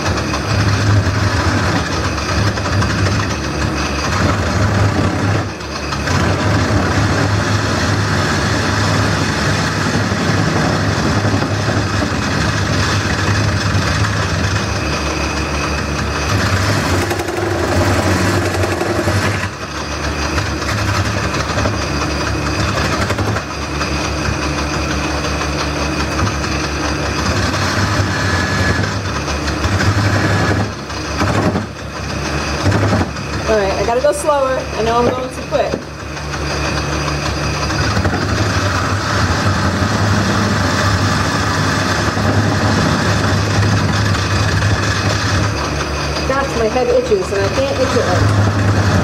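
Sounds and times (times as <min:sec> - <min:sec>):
gouge cutting wood: 0:00.0 - 0:21.8
wood lathe motor humming: 0:00.0 - 0:49.0.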